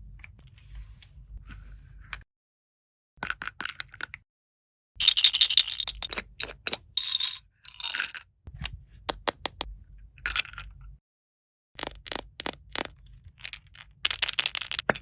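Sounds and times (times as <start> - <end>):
plastic toy pieces clicking: 5.0 - 8.2, 9.1 - 9.7, 11.8 - 15.0.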